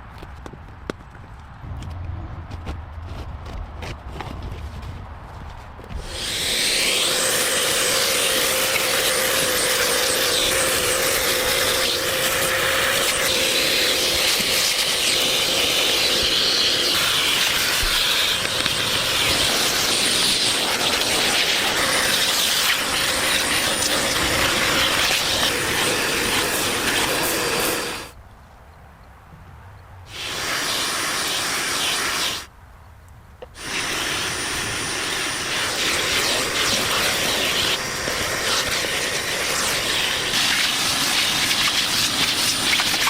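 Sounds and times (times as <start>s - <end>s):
loud steady hissing: 5.9s - 28.2s, 30.1s - 32.5s, 33.4s - 43.0s.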